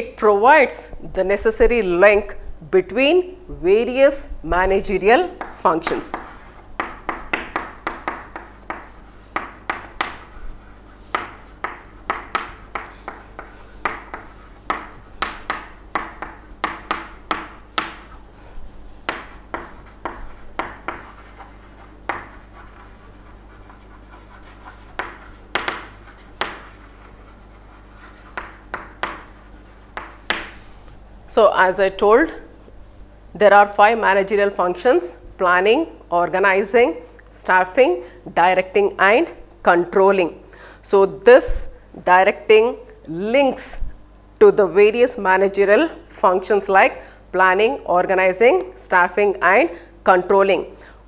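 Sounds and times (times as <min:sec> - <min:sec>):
pen scratching on paper: 0:05.8 - 0:18.2, 0:19.1 - 0:30.2.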